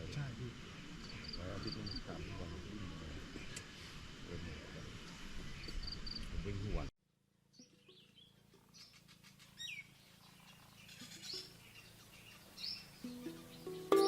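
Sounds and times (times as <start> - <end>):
faint bird chirps: 7.5 - 14.0
music: 13.0 - 14.0.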